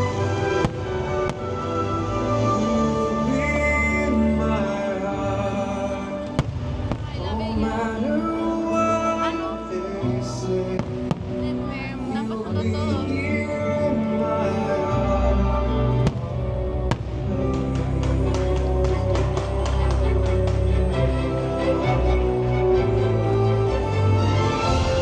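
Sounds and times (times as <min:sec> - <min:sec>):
music with singing: 0:00.0 - 0:25.0
firework bangs: 0:00.5 - 0:01.6, 0:06.2 - 0:07.6.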